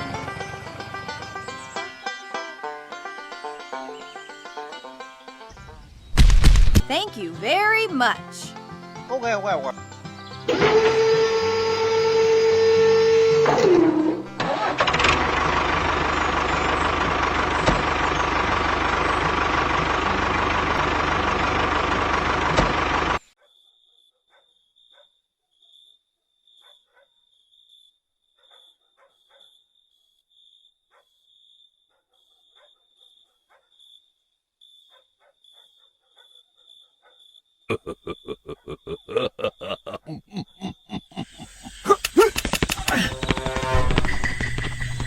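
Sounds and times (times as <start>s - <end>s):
engine running with whine: 10.5s - 23.2s, 41.4s - 45.0s.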